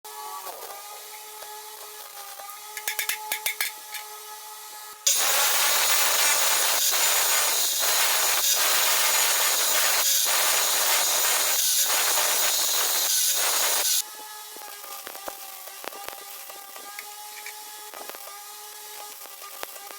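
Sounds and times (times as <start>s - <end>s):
welding arc crackling: 5.1s - 14.0s, 14.6s - 17.0s.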